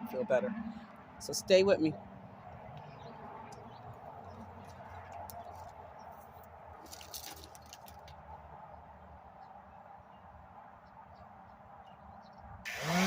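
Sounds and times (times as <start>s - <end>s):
light clicks and rustles: 4.2s - 8.2s.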